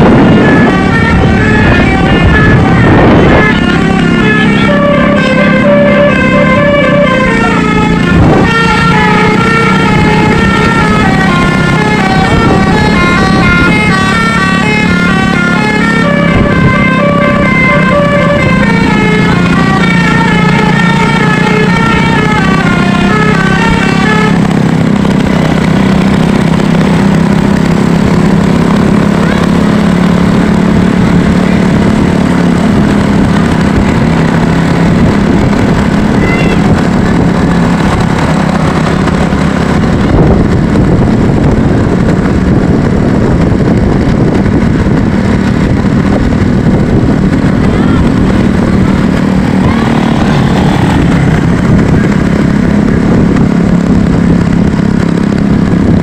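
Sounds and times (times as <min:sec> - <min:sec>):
multi-tone vehicle horn melody: 0:00.0 - 0:25.6, 0:46.3 - 0:53.2
vehicle engine and traffic noise: 0:00.0 - 0:56.0.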